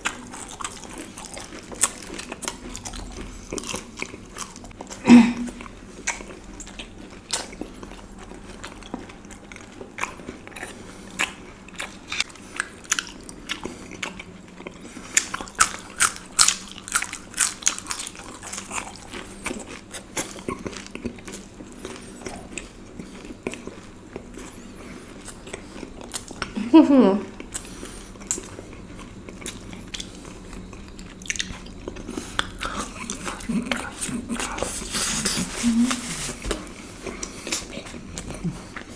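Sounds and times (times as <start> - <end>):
biting and chewing: 0.0 - 5.0, 6.0 - 26.6.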